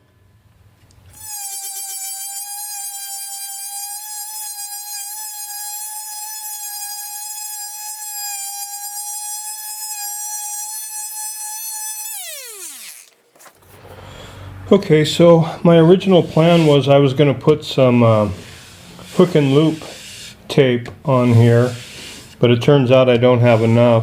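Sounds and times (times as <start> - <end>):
table saw motor whining: 1.1 - 13.8.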